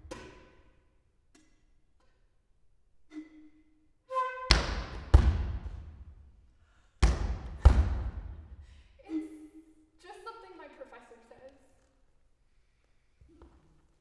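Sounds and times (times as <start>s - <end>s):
flute notes: 3.1s - 6.1s.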